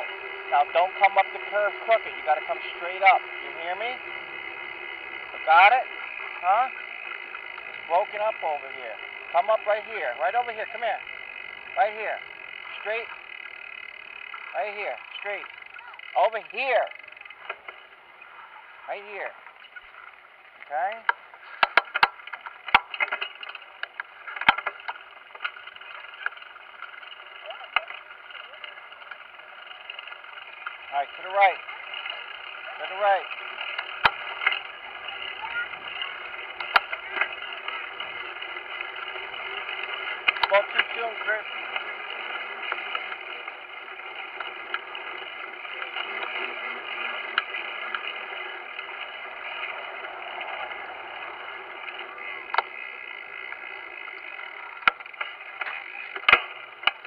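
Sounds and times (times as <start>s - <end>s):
electric dirt bike rattling: 0.0s - 57.0s
steady hum: 0.0s - 57.0s.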